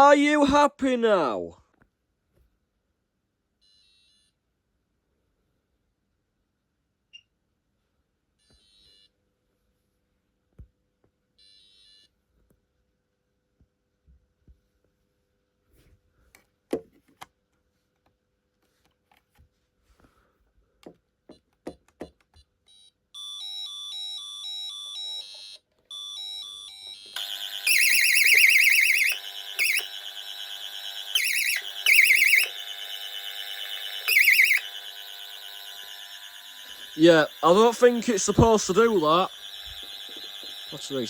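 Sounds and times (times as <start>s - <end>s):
pulsing electronic two-tone alarm: 23.2s - 41.0s
loud pulsing alarm siren: 23.4s - 41.0s.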